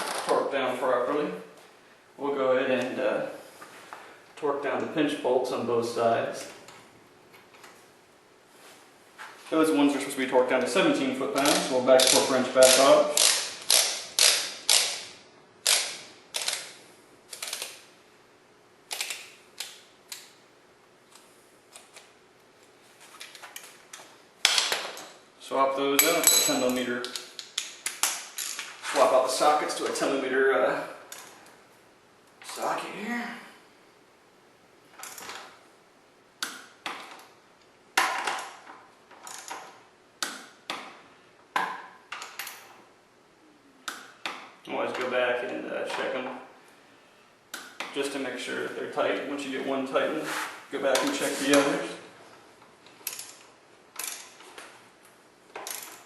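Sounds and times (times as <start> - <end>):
torque wrench clicking: 11.4 - 16.7.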